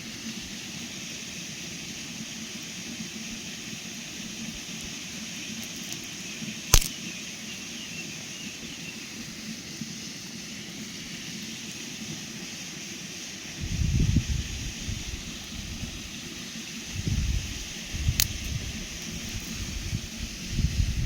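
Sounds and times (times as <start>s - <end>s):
outdoor background noise: 0.0s - 21.0s
sharp snap: 6.7s - 7.0s, 18.2s - 18.4s.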